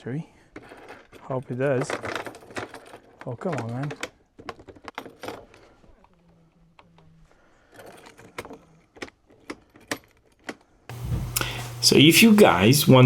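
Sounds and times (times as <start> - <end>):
faint low hum: 10.9 - 13.0.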